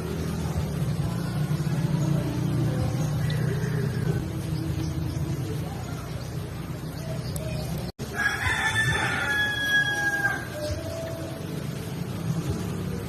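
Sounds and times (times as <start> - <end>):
rooster crowing: 8.0 - 10.8.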